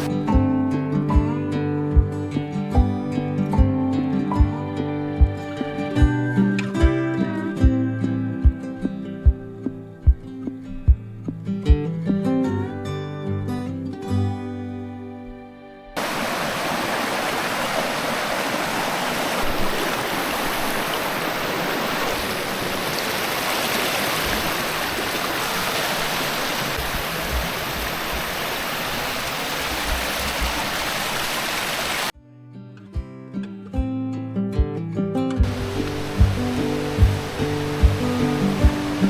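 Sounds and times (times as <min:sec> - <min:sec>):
running water rushing: 0:00.0 - 0:00.2, 0:16.0 - 0:32.1, 0:35.4 - 0:39.0
guitar music: 0:00.0 - 0:16.0, 0:32.2 - 0:39.0.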